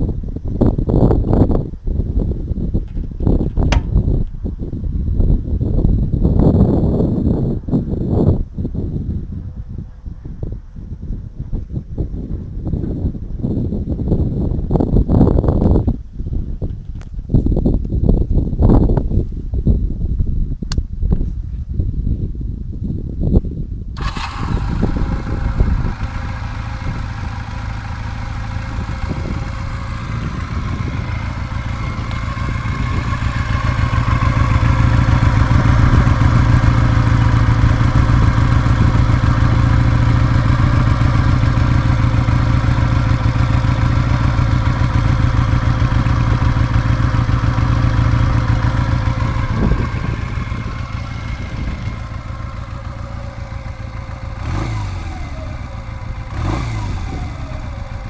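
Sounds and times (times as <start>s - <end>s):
motorcycle engine idling: 3.7s - 4.2s, 24.0s - 58.0s.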